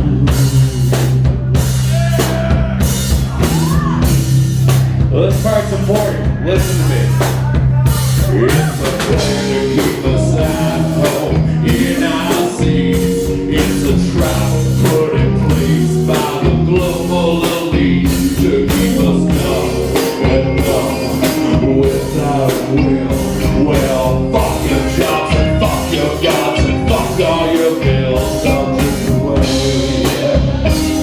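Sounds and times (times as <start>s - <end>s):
bass guitar: 0.0s - 31.0s
drum kit beat: 0.0s - 31.0s
electric guitar: 0.0s - 31.0s.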